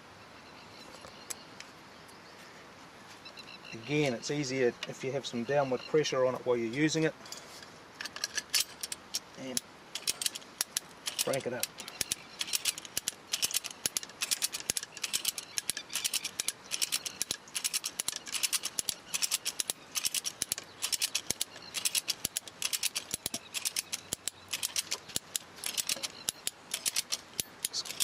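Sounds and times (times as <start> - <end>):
ratchet pawl clicking: 8.8 - 28.0.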